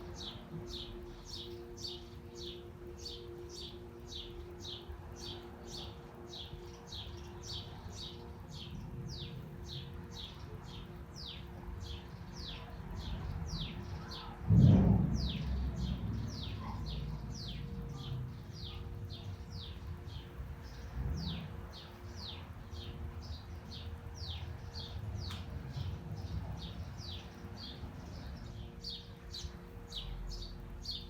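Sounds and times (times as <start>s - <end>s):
bird chirping: 0.0s - 31.0s
city background rumble: 0.0s - 31.0s
loud low thump: 14.5s - 16.5s.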